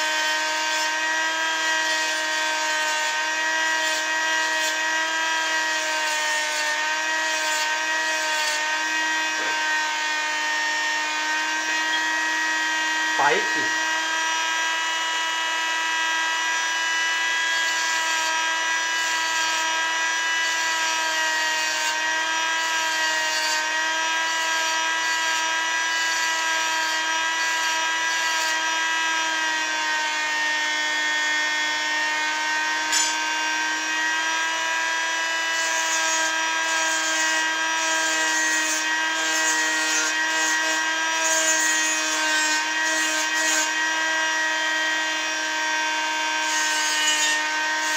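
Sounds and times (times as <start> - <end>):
engraving machine motor whine: 0.0 - 47.9
diamond tool scratching: 35.5 - 43.8.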